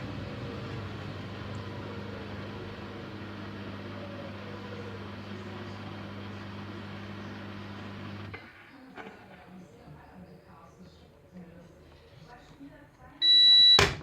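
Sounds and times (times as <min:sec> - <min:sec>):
washing machine hum and rushing: 0:00.0 - 0:08.4.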